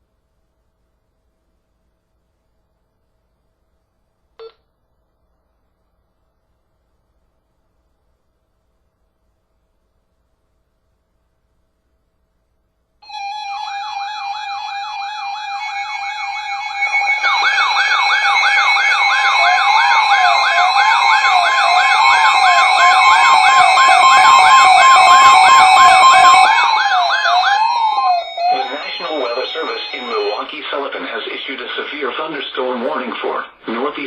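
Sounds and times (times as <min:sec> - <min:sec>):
electronic siren warbling: 0:13.0 - 0:30.5
siren slow wavering wail: 0:13.0 - 0:30.5
steady tone: 0:13.1 - 0:31.9.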